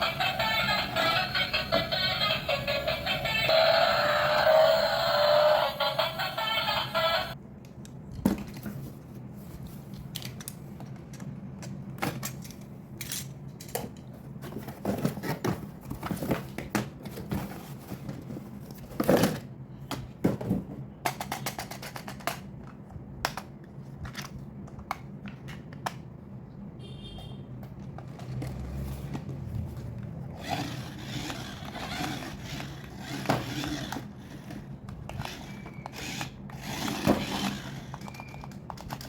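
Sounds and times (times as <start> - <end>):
plastic parts clicking and rustling: 9.6 - 26.0, 29.8 - 39.0.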